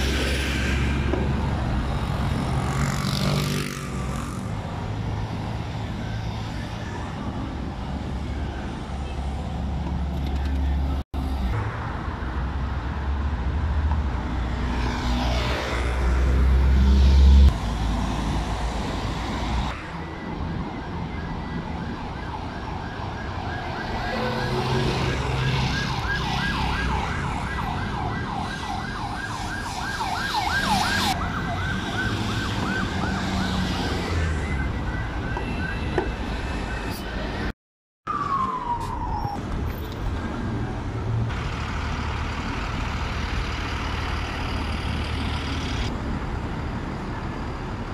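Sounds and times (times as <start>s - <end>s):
street traffic: 0.0s - 47.9s
siren yelping: 19.8s - 35.9s, 38.1s - 39.4s.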